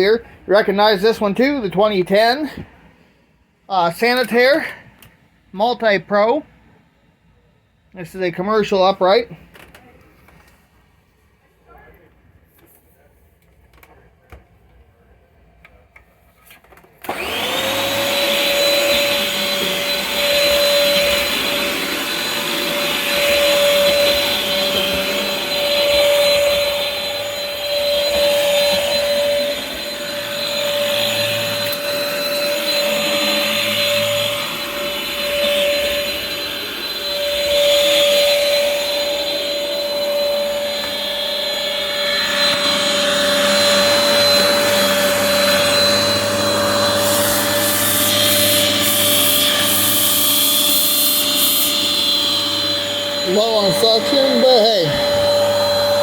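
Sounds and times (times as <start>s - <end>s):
upright vacuum motor whining: 16.6s - 56.0s.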